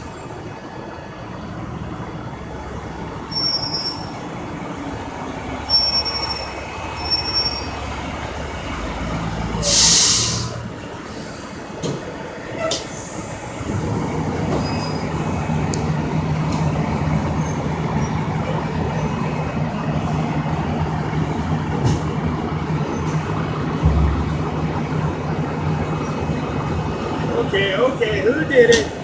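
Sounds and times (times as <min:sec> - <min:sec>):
truck engine idling: 0:00.0 - 0:29.0
short low thump: 0:23.8 - 0:24.8.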